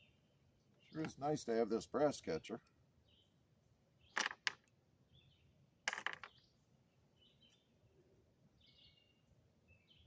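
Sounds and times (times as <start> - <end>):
brass cases clinking: 5.9 - 6.4
faint bird chirps: 6.3 - 10.0.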